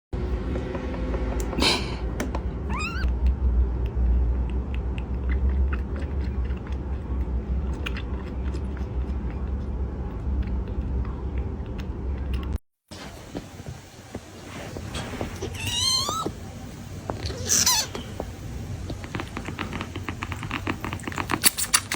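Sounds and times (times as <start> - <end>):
steady low rumble: 0.2 - 20.3
kitten mewing: 2.6 - 3.1, 15.4 - 16.4, 17.2 - 18.2.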